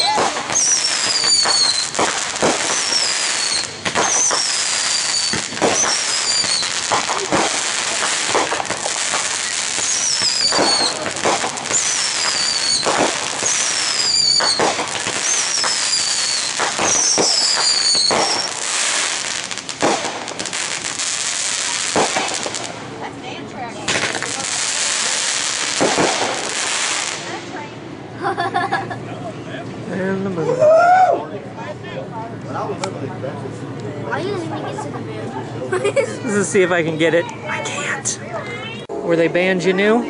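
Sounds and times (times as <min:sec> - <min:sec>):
fireworks whistles falling in pitch: 0:00.0 - 0:22.6
fireworks bangs and crackling: 0:00.0 - 0:27.9.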